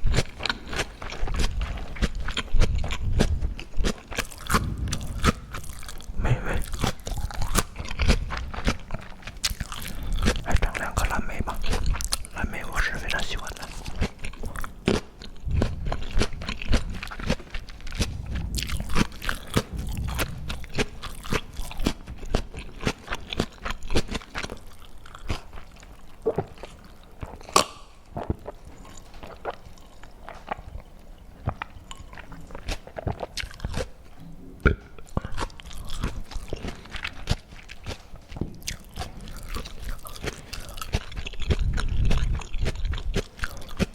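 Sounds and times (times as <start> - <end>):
person chewing crunchy food: 0.0 - 43.9.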